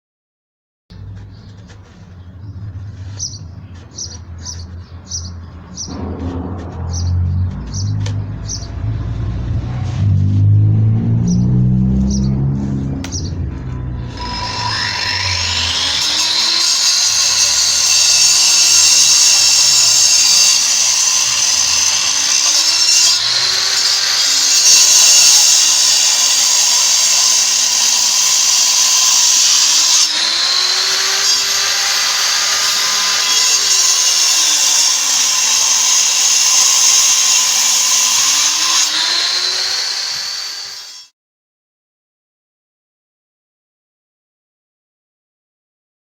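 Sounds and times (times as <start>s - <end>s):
angle grinder cutting concrete: 14.0s - 41.1s.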